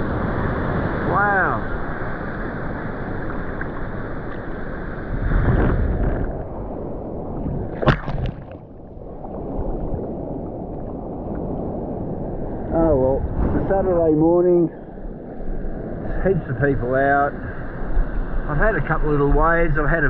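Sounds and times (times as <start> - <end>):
wind rumble on microphone: 0.0 - 20.0
water sloshing and gurgling: 1.6 - 13.9
sharp water splash: 7.4 - 11.7.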